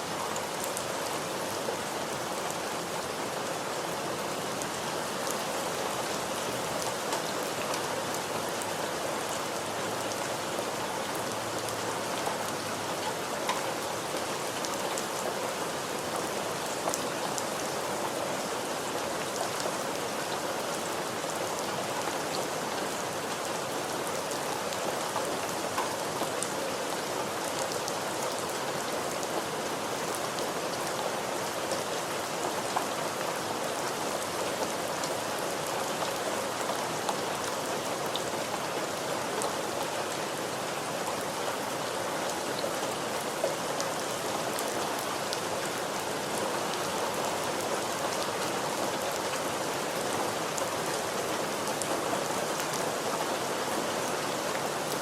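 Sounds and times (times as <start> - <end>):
steady rain hiss: 0.0 - 55.0
raindrops ticking on a surface: 11.0 - 21.3, 22.8 - 29.7.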